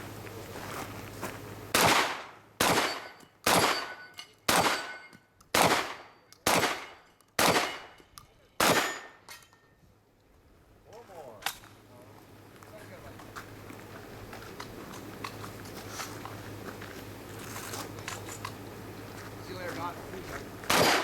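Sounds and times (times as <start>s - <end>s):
shotgun shots: 1.7s - 8.0s, 8.6s - 9.2s, 20.7s - 21.0s.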